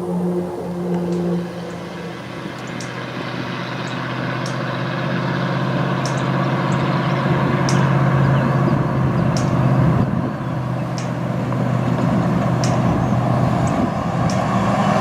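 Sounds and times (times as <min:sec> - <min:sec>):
engine drone: 0:00.0 - 0:15.0
faint sharp ticks: 0:02.5 - 0:03.0, 0:06.0 - 0:06.9, 0:07.6 - 0:08.0, 0:09.3 - 0:09.6, 0:10.9 - 0:11.2, 0:12.6 - 0:13.0, 0:13.6 - 0:14.5.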